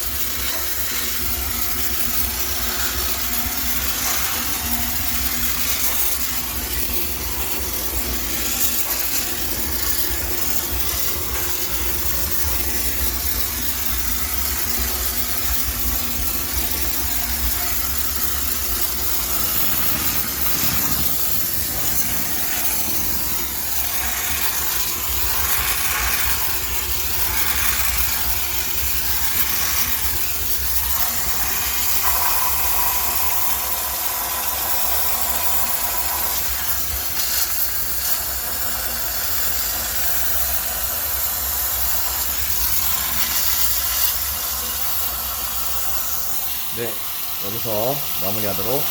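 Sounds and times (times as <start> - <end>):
machine humming: 0.0 - 37.0
steam hissing: 0.0 - 48.9.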